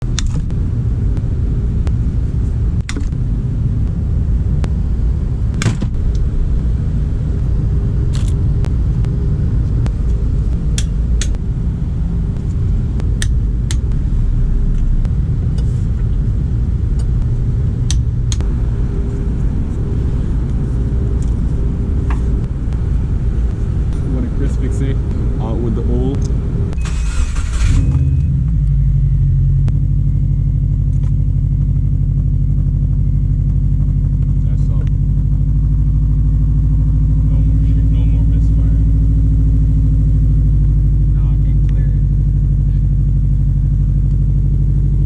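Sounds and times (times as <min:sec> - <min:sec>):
car engine running: 0:00.0 - 0:45.0
faint steady hum: 0:00.0 - 0:45.0
sharp clicks: 0:16.9 - 0:18.5.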